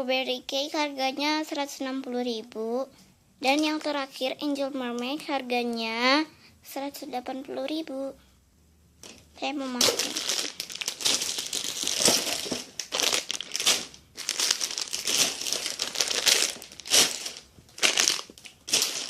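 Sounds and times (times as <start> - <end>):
plastic packaging crinkling: 9.0 - 19.0.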